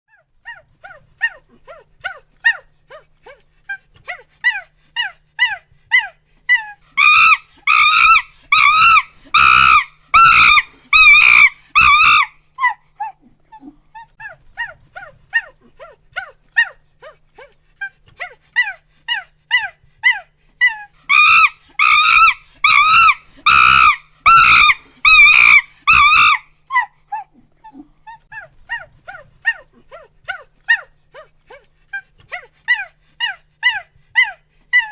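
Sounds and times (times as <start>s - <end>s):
monkey hooting and screaming: 4.5s - 13.2s, 18.6s - 27.3s, 32.3s - 34.9s.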